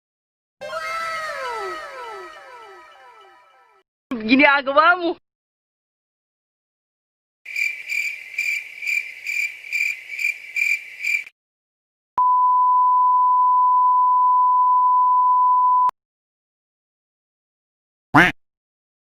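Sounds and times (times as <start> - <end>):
cricket chirping: 7.5 - 11.3
censor bleep tone: 12.2 - 15.9.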